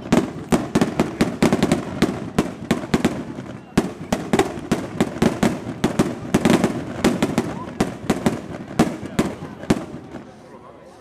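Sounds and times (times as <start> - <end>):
rockets exploding in sharp bangs: 0.0 - 10.4.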